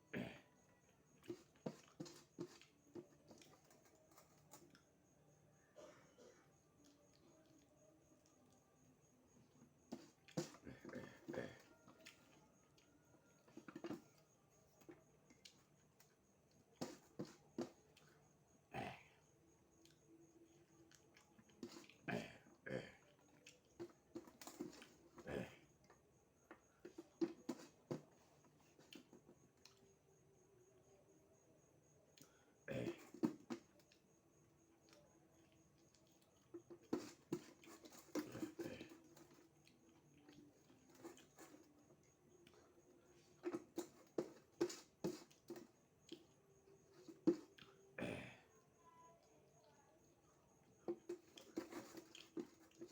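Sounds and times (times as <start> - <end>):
person chewing food: 1.1 - 4.9, 50.8 - 52.9.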